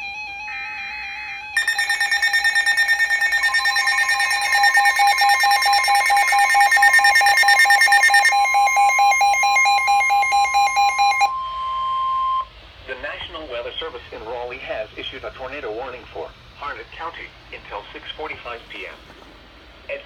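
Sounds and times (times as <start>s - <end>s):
pulsing alert tones: 1.6s - 11.3s
steady alert tone: 1.6s - 11.3s
warbling data burst: 1.6s - 11.3s.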